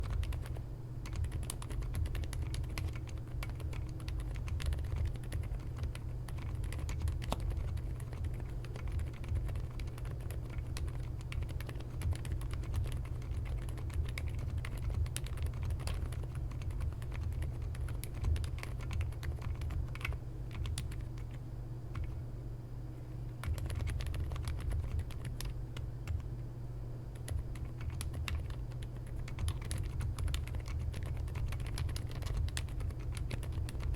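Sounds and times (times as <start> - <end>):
typing on mechanical keyboard: 0.0 - 22.2, 23.4 - 26.3, 27.2 - 33.9.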